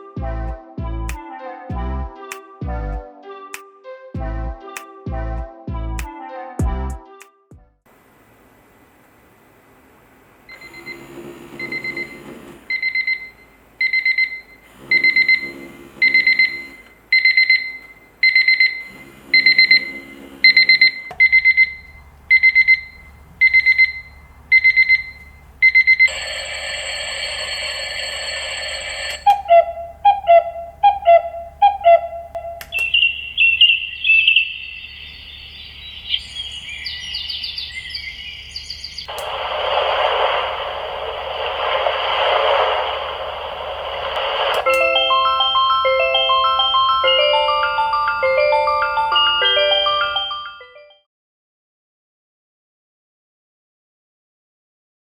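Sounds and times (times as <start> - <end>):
low alarm buzz: 10.5 - 13.3, 13.9 - 38.4
alarm clock beeping: 10.5 - 39.0, 44.6 - 51.0
harsh continuous alarm tone: 10.5 - 50.6
warbling chirps: 29.2 - 41.8.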